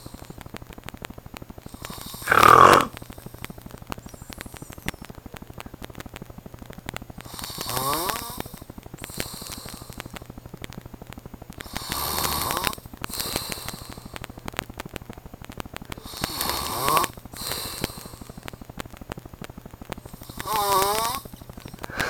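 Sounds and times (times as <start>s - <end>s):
man snoring: 1.7s - 3.0s, 7.3s - 8.5s, 11.6s - 14.0s, 16.0s - 18.2s, 20.2s - 21.3s.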